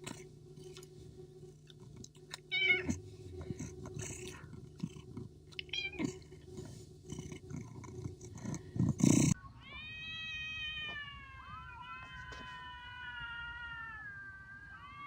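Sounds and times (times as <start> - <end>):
steady hum: 0.0 - 15.0
long cat meow: 9.6 - 15.0.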